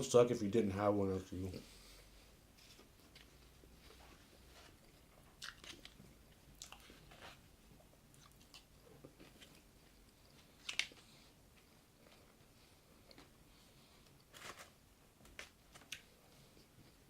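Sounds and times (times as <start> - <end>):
person chewing crispy chicken: 4.8 - 7.4.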